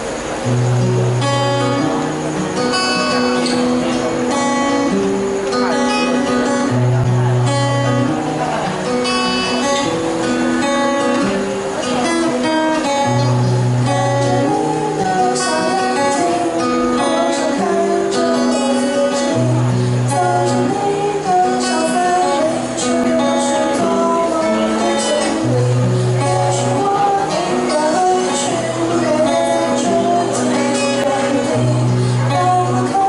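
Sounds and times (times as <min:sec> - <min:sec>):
acoustic guitar strumming: 0:00.0 - 0:33.0
person singing: 0:08.6 - 0:33.0.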